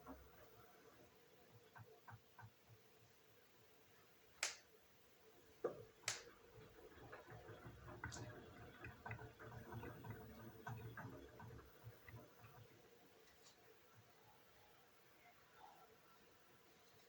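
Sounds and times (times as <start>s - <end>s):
washing machine drum ticking: 5.8s - 12.8s
washing machine clicks: 6.0s - 6.4s.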